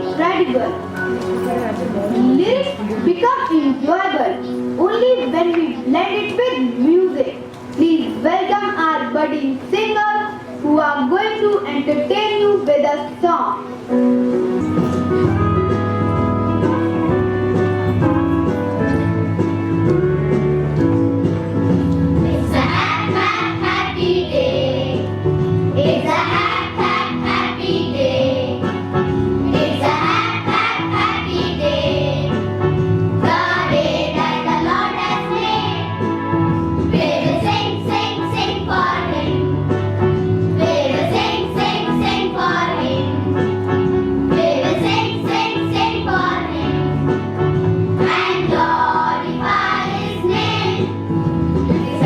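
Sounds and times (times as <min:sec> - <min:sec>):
instrumental accompaniment: 0:00.0 - 0:08.6, 0:13.6 - 0:52.0
children singing: 0:22.2 - 0:25.1, 0:25.8 - 0:28.6, 0:29.5 - 0:32.4, 0:33.2 - 0:36.0, 0:36.9 - 0:39.4, 0:40.6 - 0:43.2, 0:44.4 - 0:46.8, 0:48.0 - 0:51.0.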